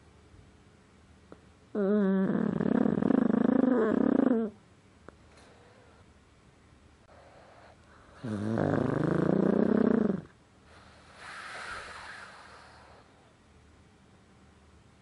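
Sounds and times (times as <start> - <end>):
dog snoring: 1.7 - 4.6, 7.1 - 13.3
airy exhale: 10.7 - 13.1.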